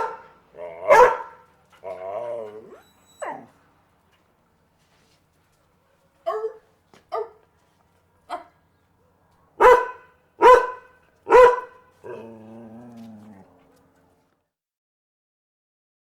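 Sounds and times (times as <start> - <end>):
dog barking: 0.0 - 1.4, 6.2 - 7.4, 8.3 - 8.6, 9.6 - 12.2
dog growling low: 0.5 - 0.9, 1.8 - 2.8, 12.0 - 14.1.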